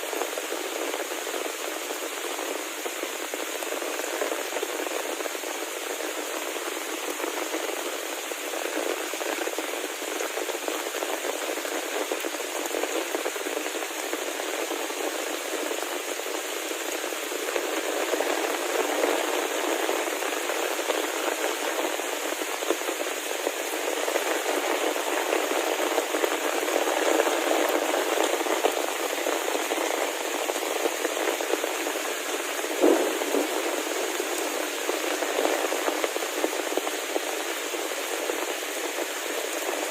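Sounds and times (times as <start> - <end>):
heavy rain hissing: 0.0 - 39.9.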